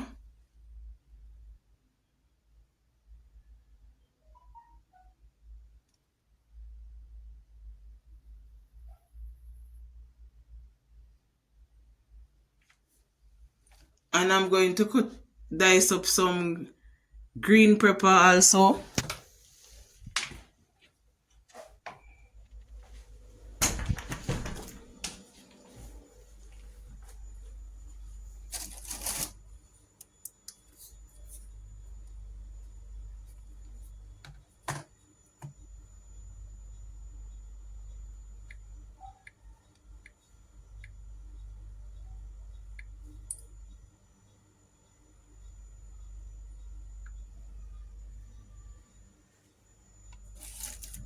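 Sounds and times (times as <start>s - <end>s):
low steady hum: 21.9s - 51.0s.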